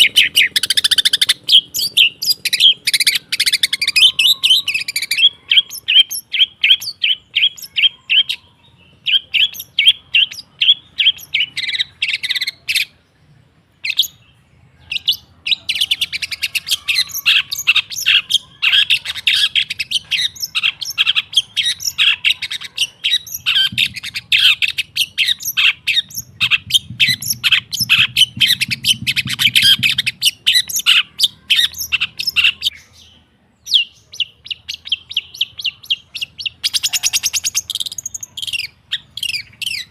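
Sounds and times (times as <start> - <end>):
shrike singing sharp chattering notes: 15.0 - 32.7.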